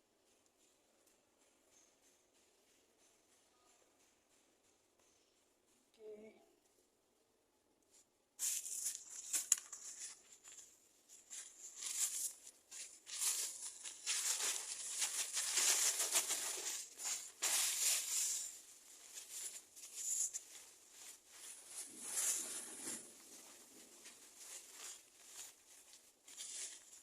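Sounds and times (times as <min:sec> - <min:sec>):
rustling and crinkling handling noise: 0:07.8 - 0:27.0.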